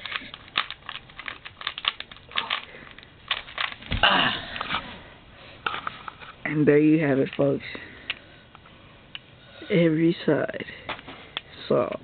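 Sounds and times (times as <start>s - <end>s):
puzzle cube clicking as twisted: 0.0s - 3.8s.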